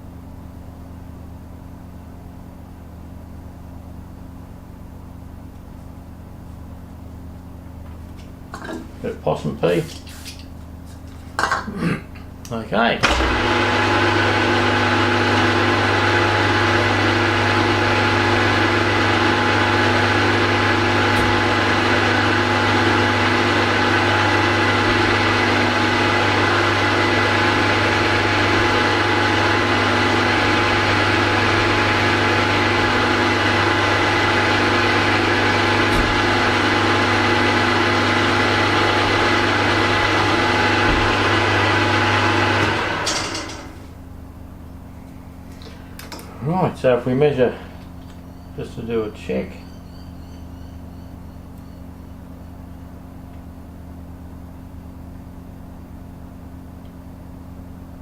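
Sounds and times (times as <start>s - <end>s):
milling machine drilling: 13.0s - 43.7s.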